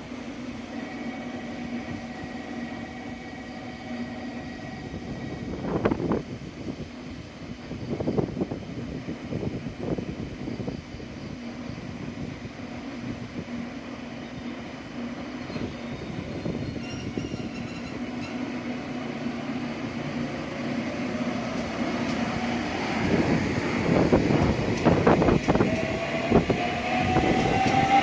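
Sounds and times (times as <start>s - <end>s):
train running noise: 0.0s - 28.0s.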